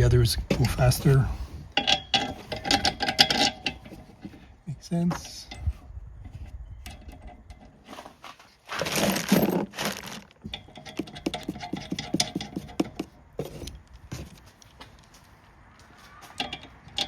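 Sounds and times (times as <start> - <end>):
metal parts scraping: 1.8 - 4.3, 6.9 - 14.4.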